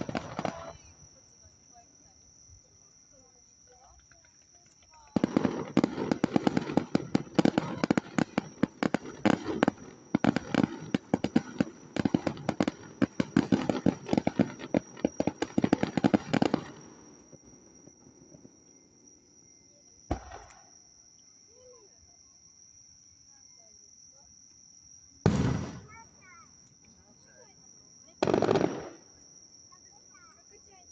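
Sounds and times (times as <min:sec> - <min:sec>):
fireworks cracks and bangs: 0:00.0 - 0:00.9, 0:04.6 - 0:18.5, 0:20.1 - 0:20.6, 0:25.2 - 0:26.4, 0:28.2 - 0:29.1.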